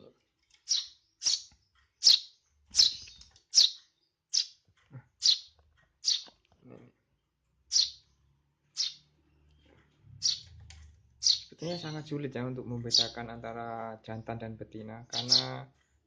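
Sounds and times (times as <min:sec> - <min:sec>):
chicks chirping: 0:00.7 - 0:04.6, 0:05.2 - 0:06.3, 0:07.7 - 0:08.1, 0:08.8 - 0:09.1, 0:10.2 - 0:12.2, 0:15.0 - 0:15.6.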